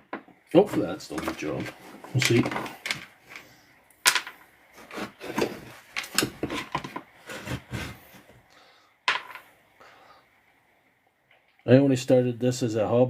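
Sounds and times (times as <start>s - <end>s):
plastic parts knocking and scraping: 0.0s - 3.5s, 4.1s - 8.4s.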